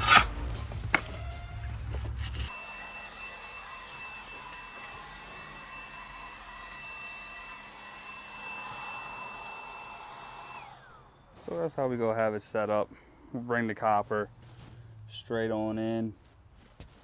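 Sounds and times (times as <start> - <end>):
small electric motor whining: 0.0 - 1.0, 1.6 - 11.3.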